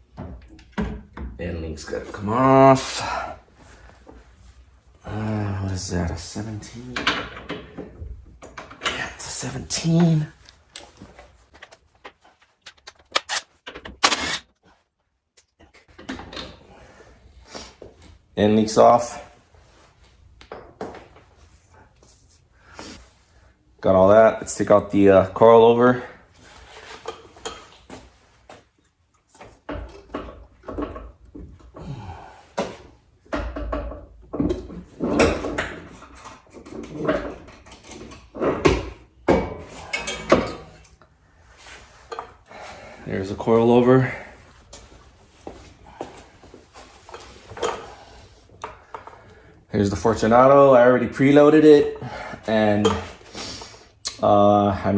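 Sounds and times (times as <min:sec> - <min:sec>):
metal knocks and clunks: 0:11.6 - 0:14.4
hand tools clicking on metal: 0:12.6 - 0:14.5.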